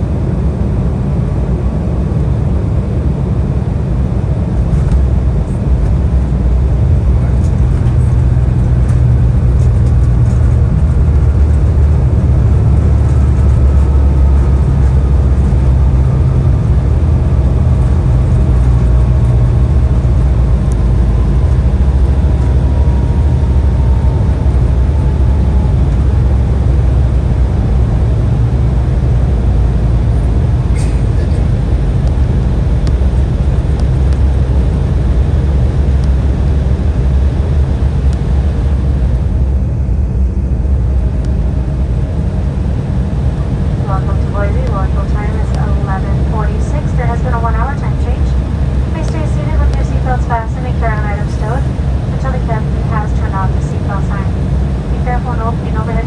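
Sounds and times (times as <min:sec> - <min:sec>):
airliner cabin rumble: 0:00.0 - 0:56.0
faint falling whine: 0:04.6 - 0:56.0.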